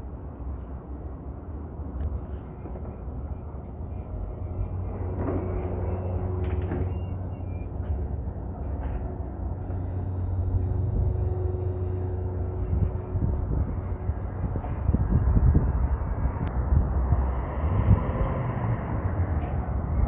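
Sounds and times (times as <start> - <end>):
low city rumble: 0.0 - 20.0
faint held tone: 9.7 - 13.0.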